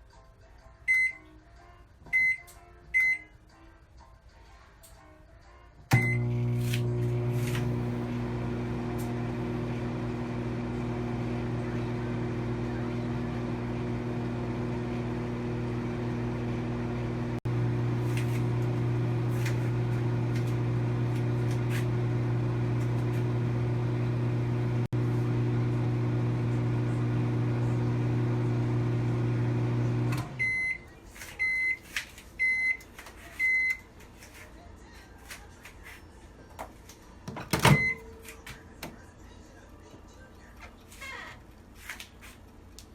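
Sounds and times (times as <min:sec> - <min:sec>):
microwave oven humming: 0:05.9 - 0:31.8.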